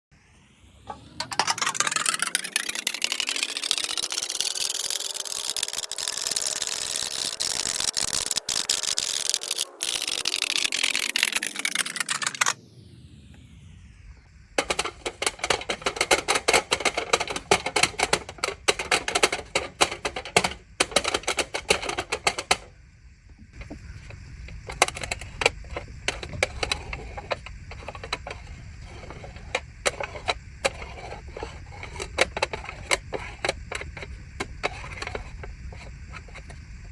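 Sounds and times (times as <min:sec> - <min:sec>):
fast crackling and clicking: 0:00.9 - 0:12.6.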